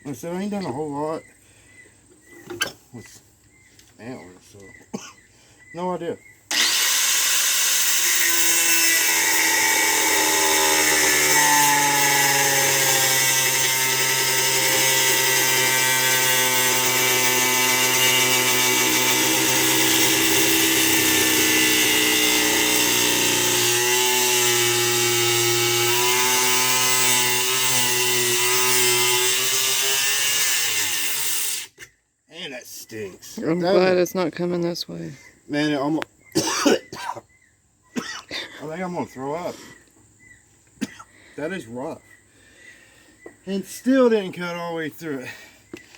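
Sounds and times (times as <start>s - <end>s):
power tool cutting antler: 6.5s - 31.8s.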